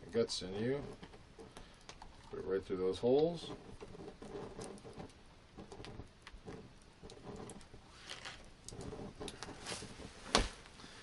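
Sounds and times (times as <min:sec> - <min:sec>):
soft rustling: 0:00.1 - 0:11.0
small irregular clicks: 0:00.8 - 0:02.4, 0:03.1 - 0:10.1.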